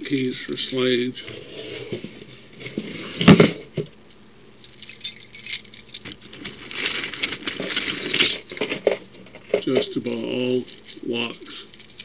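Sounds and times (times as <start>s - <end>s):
keys jingling on a ring: 0.0s - 1.0s, 4.6s - 8.6s, 10.1s - 12.0s.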